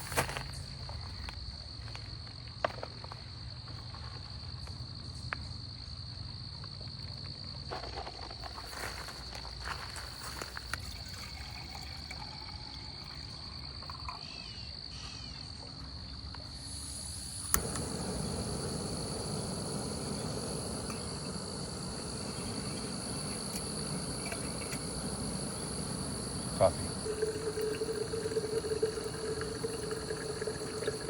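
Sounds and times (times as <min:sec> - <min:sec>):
insects chirring: 0:00.0 - 0:31.0
higher insect tone: 0:09.6 - 0:15.6, 0:16.4 - 0:31.0.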